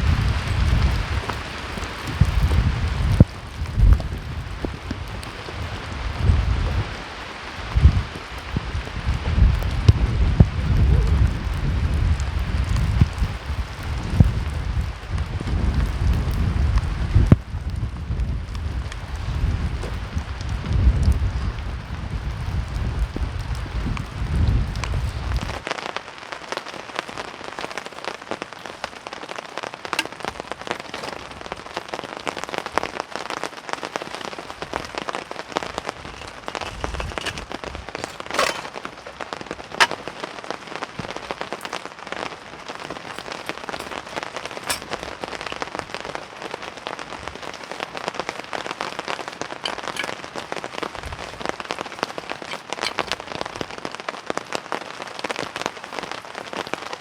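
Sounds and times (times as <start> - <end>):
wind rumble on microphone: 0.0 - 25.6
heavy rain falling: 0.0 - 57.0.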